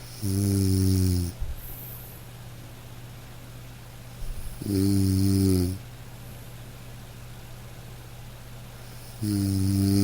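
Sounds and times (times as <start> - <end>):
steady low hum: 0.0 - 10.0.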